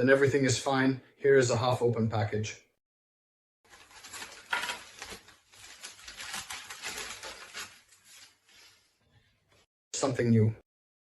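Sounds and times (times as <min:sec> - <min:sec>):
packaging rustling and crinkling: 0:03.7 - 0:08.8.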